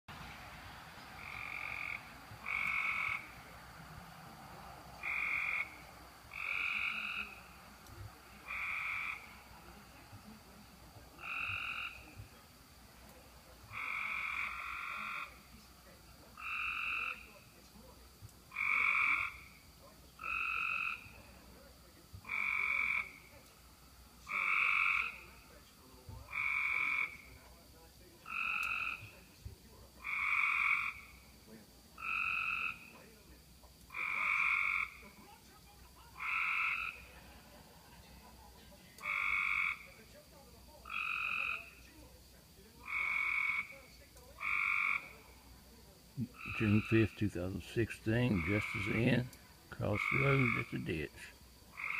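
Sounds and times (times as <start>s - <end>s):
frogs calling: 0.9s - 51.9s.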